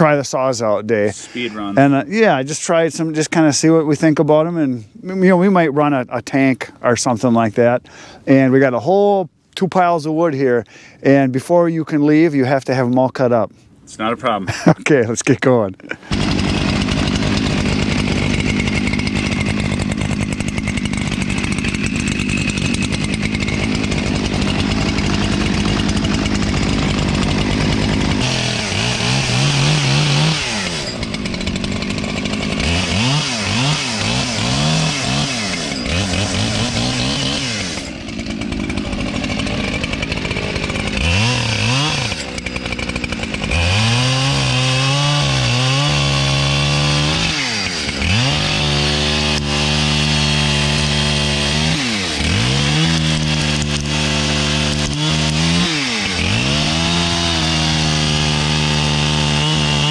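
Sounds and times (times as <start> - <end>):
chainsaw running and revving: 16.0 - 59.9.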